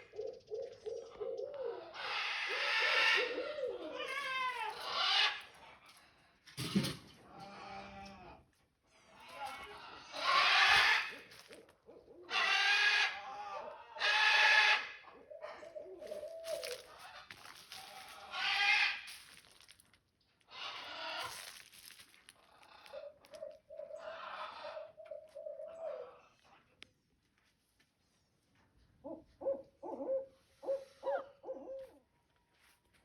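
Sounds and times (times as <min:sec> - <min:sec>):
owl hooting: 0:00.0 - 0:05.4, 0:11.9 - 0:16.9, 0:29.0 - 0:32.0.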